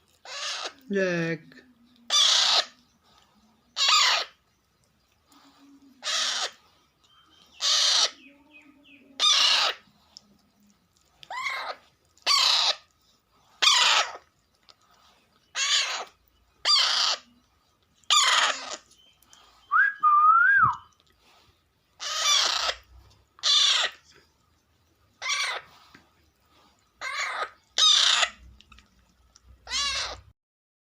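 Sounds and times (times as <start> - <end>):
parakeet chicks squawking: 0.1 - 0.9, 2.1 - 3.1, 3.7 - 4.4, 5.4 - 6.6, 7.2 - 10.0, 11.2 - 12.9, 13.5 - 14.4, 15.4 - 17.4, 18.0 - 19.6, 22.0 - 24.2, 25.2 - 25.9, 26.9 - 28.5, 29.5 - 30.3
whistle-like bird call: 19.7 - 20.8.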